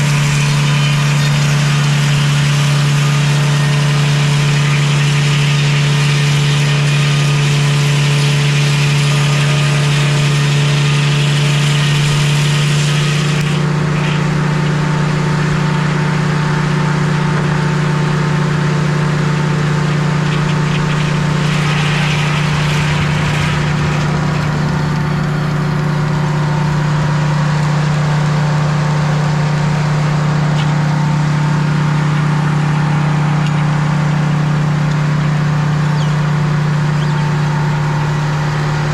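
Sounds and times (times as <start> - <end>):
sawmill engine running: 0.0 - 13.6, 20.2 - 27.6, 34.6 - 38.9
high hiss of sawing log: 21.1 - 27.2.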